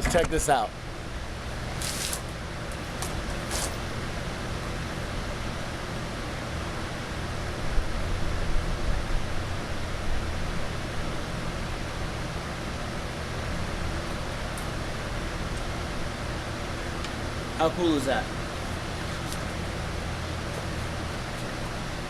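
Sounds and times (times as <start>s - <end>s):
air compressor humming: 0.0s - 7.1s.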